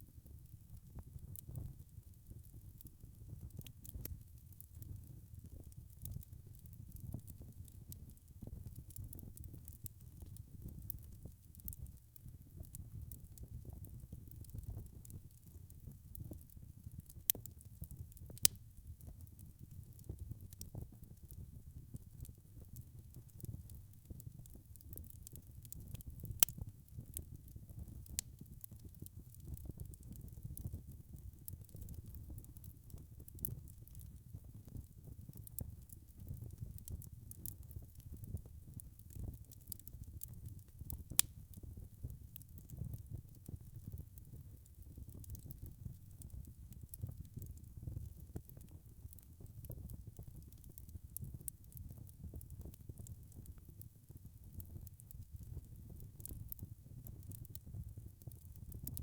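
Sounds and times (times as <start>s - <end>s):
wood fire popping: 0.3s - 12.0s, 12.6s - 59.0s
fire crackling: 0.3s - 59.0s
fire flames rumbling: 35.4s - 41.8s.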